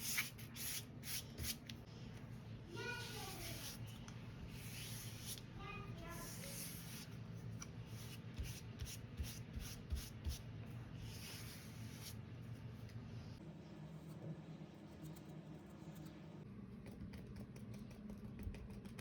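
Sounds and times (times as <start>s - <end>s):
paintbrush dabbing on paper: 2.8s - 5.5s, 6.2s - 7.2s.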